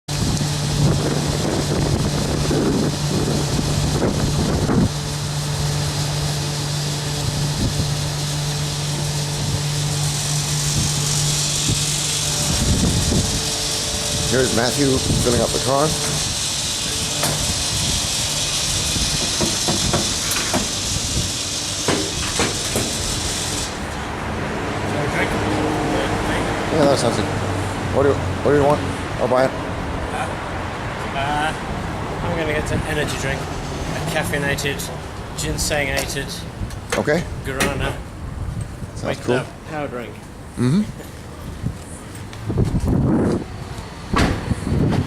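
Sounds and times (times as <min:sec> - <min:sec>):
wind rumble on microphone: 0:00.1 - 0:23.4, 0:36.5 - 0:39.1, 0:41.4 - 0:45.0
vehicle engine humming: 0:00.1 - 0:45.0.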